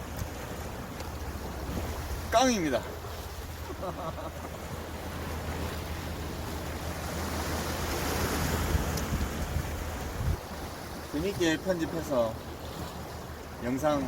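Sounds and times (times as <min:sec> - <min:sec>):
sea waves: 0:00.0 - 0:14.0
wind on microphone: 0:06.6 - 0:11.1.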